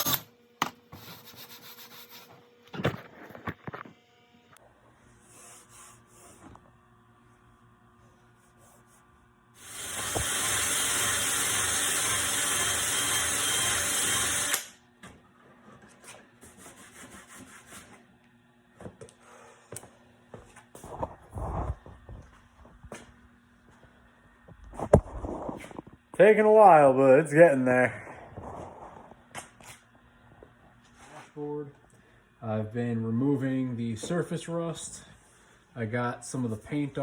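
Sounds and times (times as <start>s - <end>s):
power tool stripping metal: 9.6s - 14.8s.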